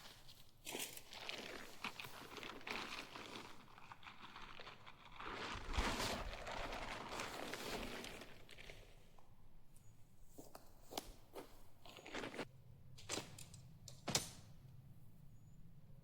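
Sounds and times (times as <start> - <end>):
tent fabric rustling: 0.0 - 9.2, 11.2 - 12.5.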